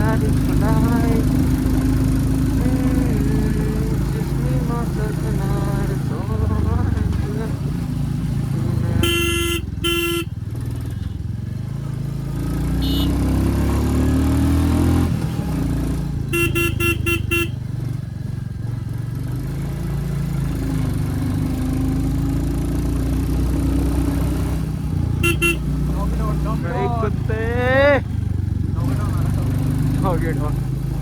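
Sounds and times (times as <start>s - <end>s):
motorcycle engine running: 0.0s - 31.0s
horn beeps: 9.0s - 11.3s, 12.8s - 13.4s, 16.3s - 17.6s, 25.2s - 25.8s.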